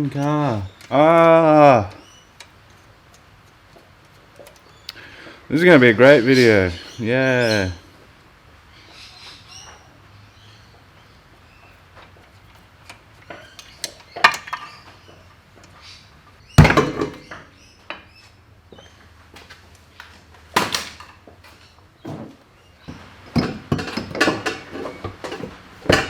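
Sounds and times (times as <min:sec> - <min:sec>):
heavy metal knock: 0:16.6 - 0:17.4
metal tools clanking: 0:16.6 - 0:18.2, 0:23.3 - 0:26.0.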